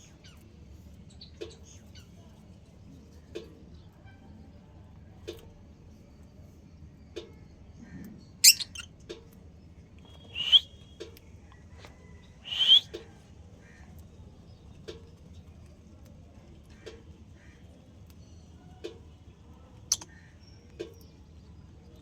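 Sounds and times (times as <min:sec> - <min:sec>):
lovebirds chirping and calling: 0:08.0 - 0:08.9, 0:10.1 - 0:10.8, 0:12.3 - 0:13.0.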